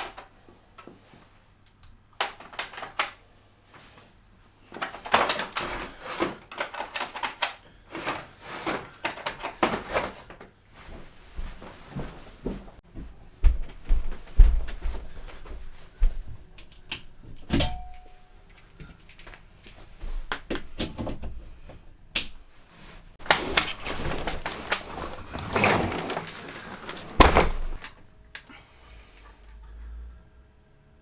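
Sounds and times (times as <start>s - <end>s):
rustling and scraping: 3.7s - 12.8s, 22.5s - 28.0s
clatter of objects handled: 4.7s - 10.5s, 23.2s - 28.0s.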